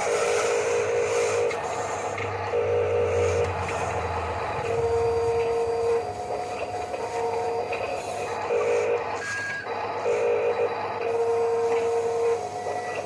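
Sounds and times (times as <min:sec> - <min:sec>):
small motors whining: 0:00.0 - 0:13.0
low hum: 0:03.4 - 0:07.0.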